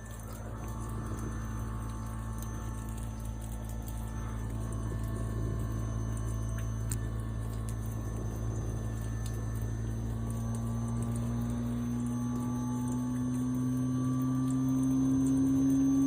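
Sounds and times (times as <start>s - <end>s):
heat pump humming: 0.0s - 16.0s.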